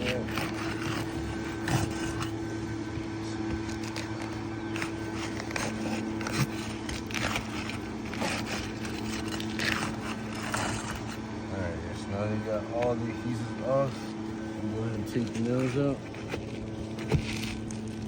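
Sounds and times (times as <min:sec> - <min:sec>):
pry bar scraping shingles: 0:00.0 - 0:02.5, 0:03.5 - 0:11.3, 0:14.8 - 0:18.0.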